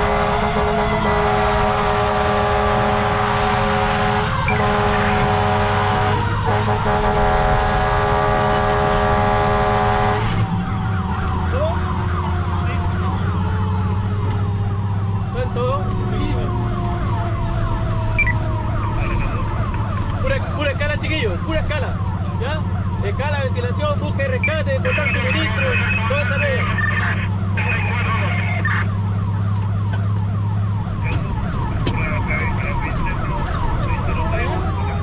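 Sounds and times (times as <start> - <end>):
fire engine horn blare: 0.0 - 11.0
engine low drone: 0.0 - 35.0
siren wailing: 0.0 - 35.0.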